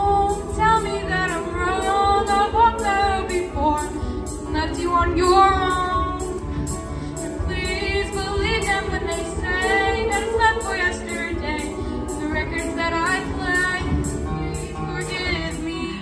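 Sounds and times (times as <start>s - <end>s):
backing track with hi-hat and bass: 0.0s - 16.0s
choir singing: 7.2s - 15.7s.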